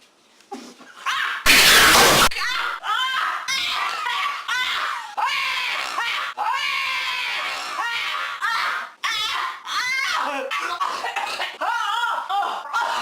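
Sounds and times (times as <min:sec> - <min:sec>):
woman screaming: 0:01.0 - 0:10.8
loud harsh burst: 0:01.5 - 0:02.8.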